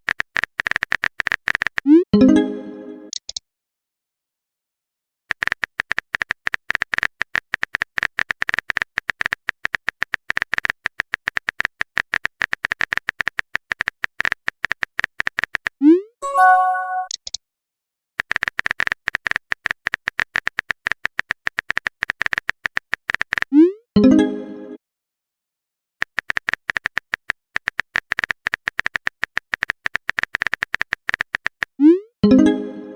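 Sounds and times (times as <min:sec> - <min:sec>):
phone keyboard clicks: 0:05.3 - 0:15.7, 0:18.2 - 0:23.5, 0:26.0 - 0:31.7
short chime: 0:16.2 - 0:17.1.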